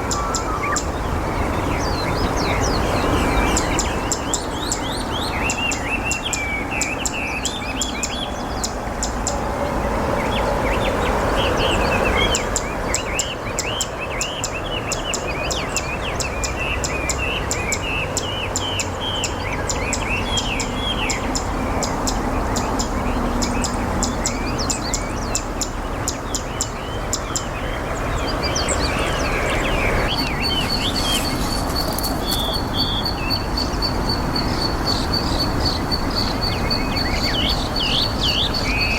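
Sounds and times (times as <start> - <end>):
outdoor background noise: 0.0 - 38.9
small birds chirping: 0.0 - 38.9
bird singing sharp zit notes: 22.6 - 38.9.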